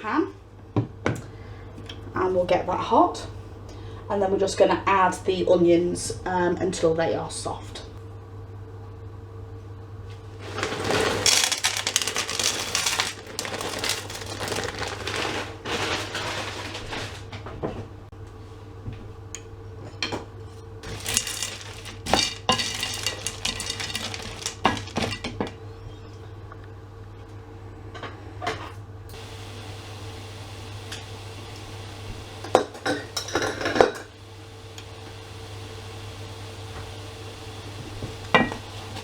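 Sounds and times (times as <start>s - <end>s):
onions sizzling in frying pan: 20.8s - 25.2s
utensil scraping and clinking on pan: 20.8s - 25.3s.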